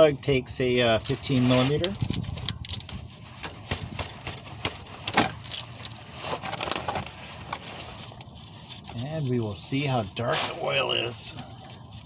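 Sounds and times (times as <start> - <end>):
metal wrench clinking: 1.0 - 3.0, 5.3 - 7.0.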